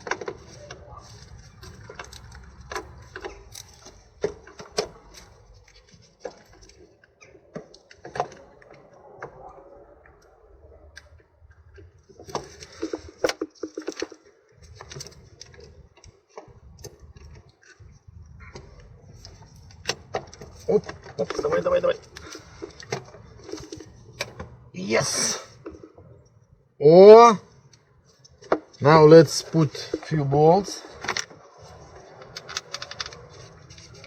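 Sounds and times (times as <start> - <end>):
metal clicks and knocks: 0.0 - 9.3, 11.0 - 24.6, 30.9 - 34.0.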